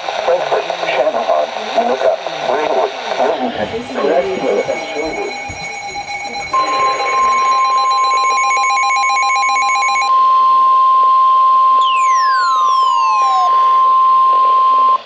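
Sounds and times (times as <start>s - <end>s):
pulsing electronic tones: 3.6s - 10.1s, 11.8s - 13.8s
steady high alarm tone: 3.6s - 10.8s, 11.8s - 15.0s
falling electronic sweep: 11.8s - 13.8s.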